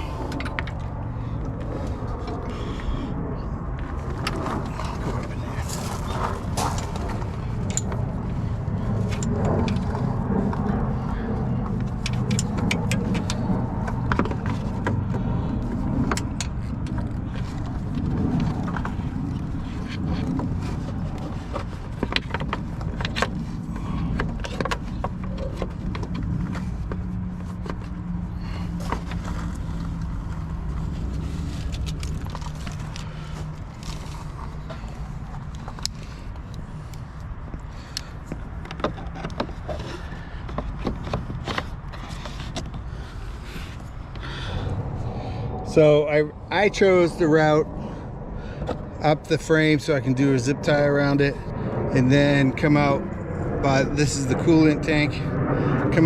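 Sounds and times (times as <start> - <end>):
low engine rumble: 0.0 - 56.0.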